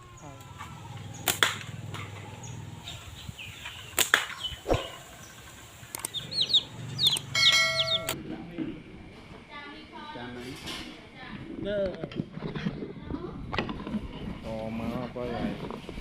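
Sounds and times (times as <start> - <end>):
small birds chirping: 0.0 - 8.2
low steady hum: 0.0 - 9.1
sharp snaps and knocks: 0.5 - 2.3, 3.6 - 5.0, 5.9 - 6.2.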